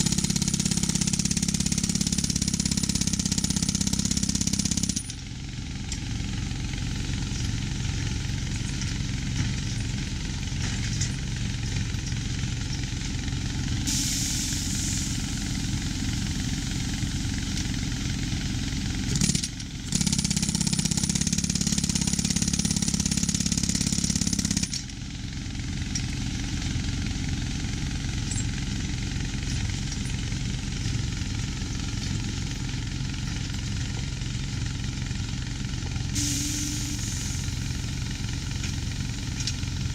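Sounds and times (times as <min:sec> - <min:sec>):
vehicle engine rattling: 0:00.0 - 0:39.9
hiss: 0:13.9 - 0:16.8, 0:36.2 - 0:37.8.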